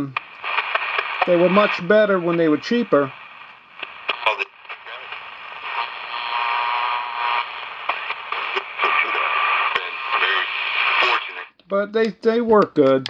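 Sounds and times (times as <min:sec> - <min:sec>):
radio hiss and static: 0:00.0 - 0:11.6
faint radio broadcast: 0:00.0 - 0:12.9.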